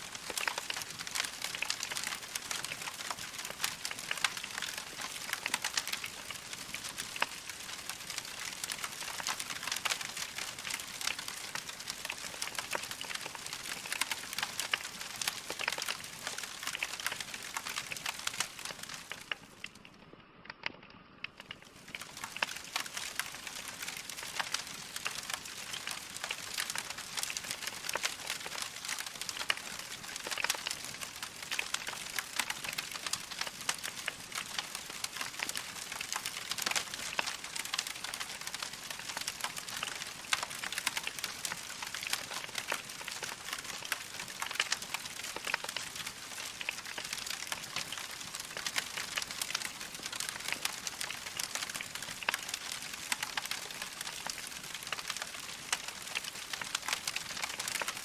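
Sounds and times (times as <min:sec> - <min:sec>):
wood fire crackling: 0:00.0 - 0:20.6, 0:21.2 - 0:58.0.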